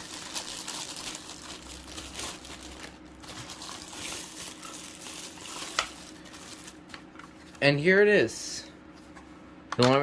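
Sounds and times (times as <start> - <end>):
packaging rustling: 0.0 - 7.4.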